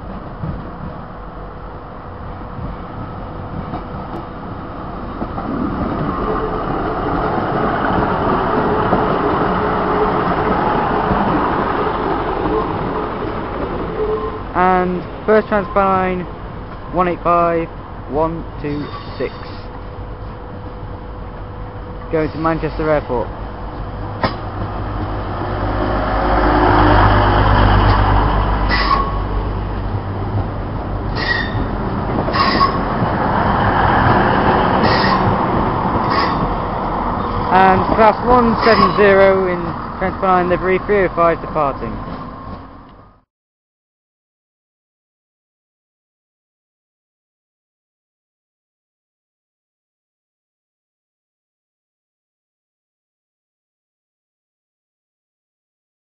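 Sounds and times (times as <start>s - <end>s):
diesel train engine hum: 0.0s - 43.2s.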